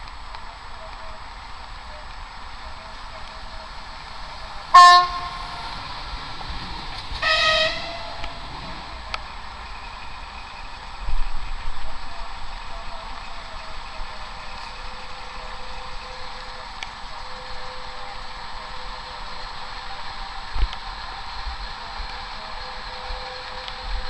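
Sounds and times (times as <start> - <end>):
rail vehicle noise: 0.0 - 24.0
locomotive horn toot: 1.9 - 9.1.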